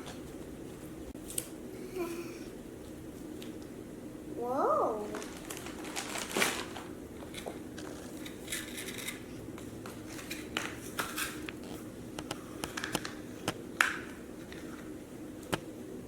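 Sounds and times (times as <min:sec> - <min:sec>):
toy tools scraping: 0:07.3 - 0:09.3.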